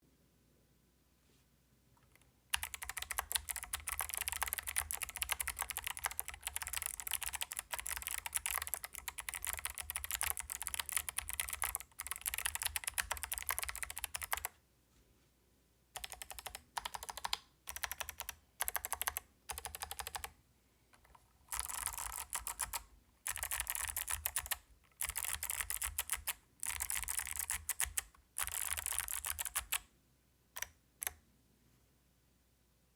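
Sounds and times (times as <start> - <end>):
typing on clicky mechanical keyboard: 2.0 - 14.5, 16.0 - 20.4, 21.0 - 29.9.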